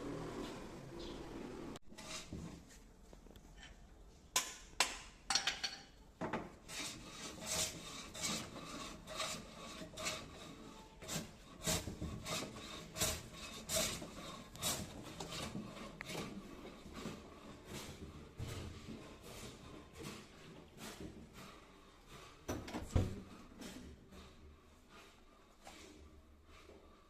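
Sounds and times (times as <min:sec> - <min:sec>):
rasping strokes on hard surface: 0:01.9 - 0:02.5, 0:06.6 - 0:22.5, 0:23.3 - 0:27.0.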